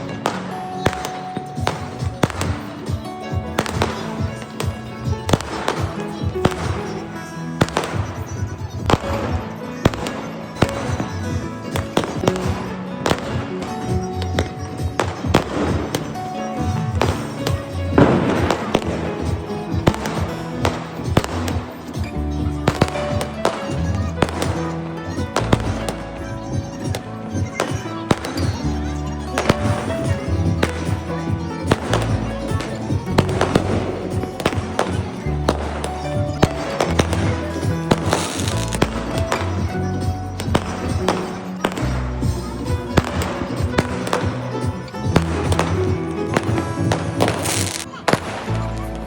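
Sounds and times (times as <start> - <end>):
background music: 0.0 - 49.0
firecrackers banging: 0.0 - 49.0
fireworks crackling: 0.0 - 49.0.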